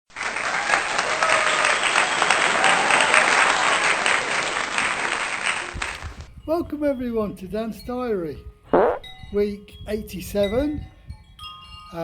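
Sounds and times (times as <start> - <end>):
crowd clapping: 0.1 - 6.3.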